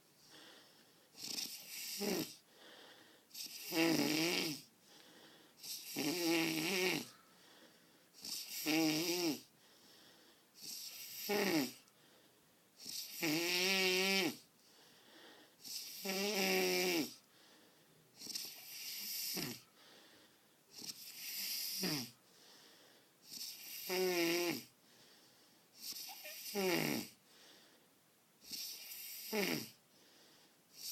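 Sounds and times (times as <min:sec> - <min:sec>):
man snoring: 0:01.2 - 0:02.5, 0:03.3 - 0:04.7, 0:05.6 - 0:07.2, 0:08.2 - 0:09.5, 0:10.6 - 0:11.8, 0:12.8 - 0:14.5, 0:15.6 - 0:17.2, 0:18.2 - 0:19.7, 0:20.7 - 0:22.2, 0:23.3 - 0:24.7, 0:25.8 - 0:27.2, 0:28.4 - 0:29.8.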